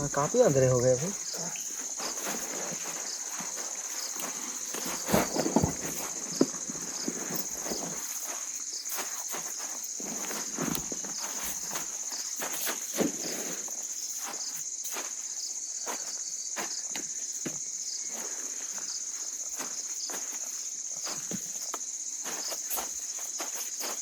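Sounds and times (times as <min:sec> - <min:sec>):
rustling: 0:00.0 - 0:15.1
footsteps: 0:00.0 - 0:15.2, 0:15.8 - 0:24.0
insect chorus: 0:00.0 - 0:24.0.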